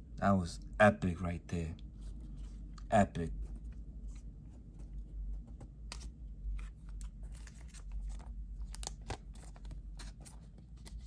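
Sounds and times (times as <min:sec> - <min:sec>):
cards and plastic packaging rustling: 0:03.3 - 0:11.0.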